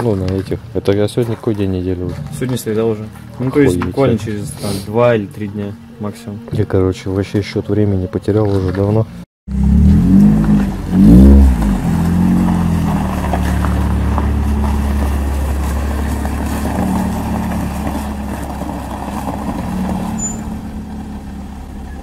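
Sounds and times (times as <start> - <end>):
car engine idling with rattling knock: 12.5 - 22.0.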